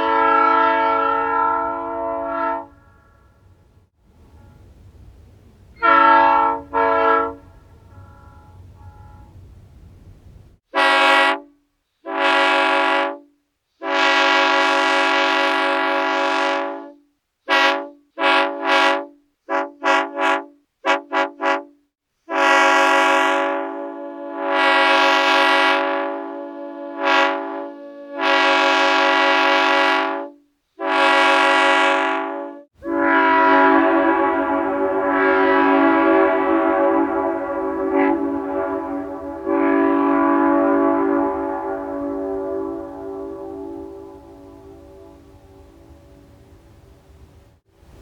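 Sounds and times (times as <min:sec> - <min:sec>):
train air horn blasts: 0:00.0 - 0:09.7, 0:10.6 - 0:48.0
faint low rumble: 0:02.6 - 0:10.6.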